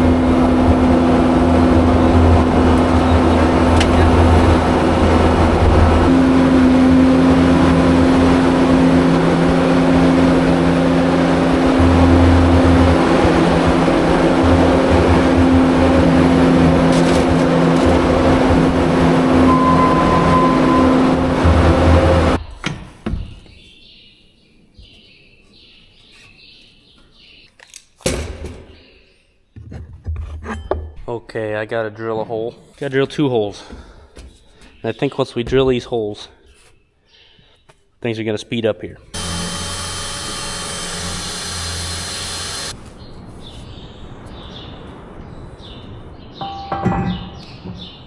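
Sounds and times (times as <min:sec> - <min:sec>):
power drill drilling: 0:39.2 - 0:42.8.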